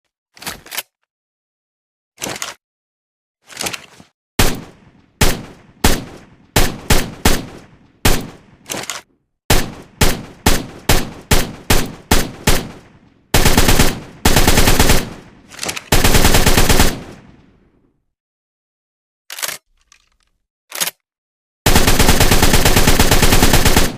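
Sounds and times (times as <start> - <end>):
automatic gunfire bursts: 4.4 - 8.4, 9.5 - 15.3, 15.9 - 17.2, 21.7 - 23.9
rifle single shots: 4.4 - 8.6.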